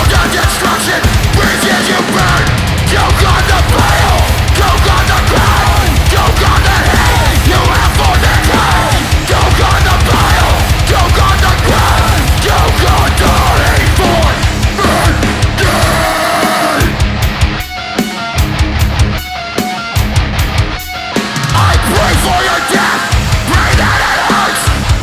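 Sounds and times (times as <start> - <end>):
fast dense drumming: 0.0 - 19.3, 20.0 - 25.0
distorted guitars: 0.0 - 25.0.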